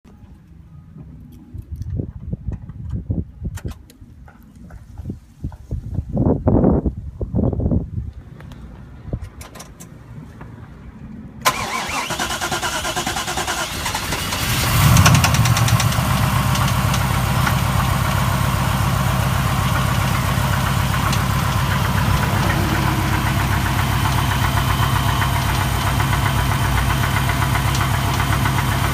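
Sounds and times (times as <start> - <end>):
car engine revving and idling: 14.2 - 28.9.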